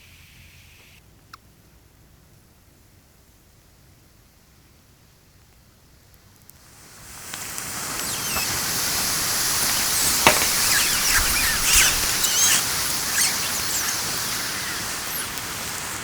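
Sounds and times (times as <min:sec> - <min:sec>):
crackles: 0:06.1 - 0:16.0
battery venting gas hiss: 0:06.4 - 0:16.0
high squealing whistles: 0:07.2 - 0:16.0
sharp crack: 0:07.3 - 0:16.0.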